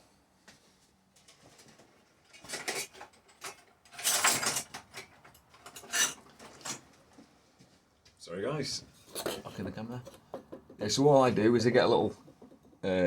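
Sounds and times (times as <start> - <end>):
metal parts rattling and clinking: 2.3 - 6.8.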